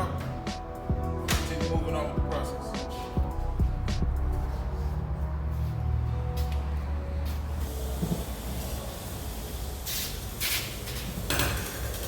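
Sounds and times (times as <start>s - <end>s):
music: 0.0s - 12.0s
short bursts of hissing air: 7.6s - 10.9s.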